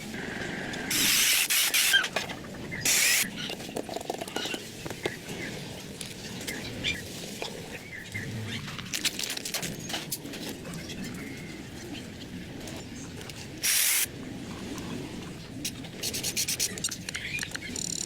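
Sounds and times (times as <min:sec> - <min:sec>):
hissing spray bursts: 0:00.9 - 0:02.0, 0:13.6 - 0:14.1.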